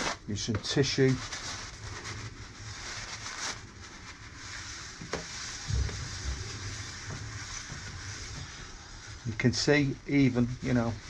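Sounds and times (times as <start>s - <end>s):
aerosol spray hissing: 5.0s - 9.8s.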